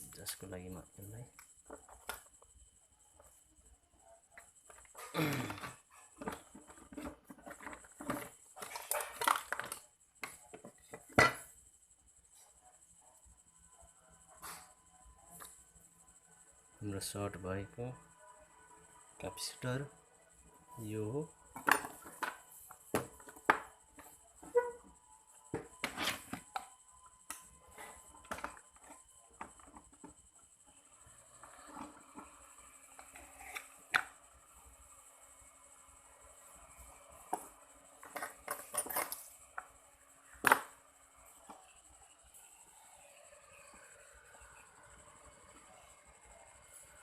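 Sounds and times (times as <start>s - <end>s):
small tools clicking and scraping: 38.0s - 39.7s.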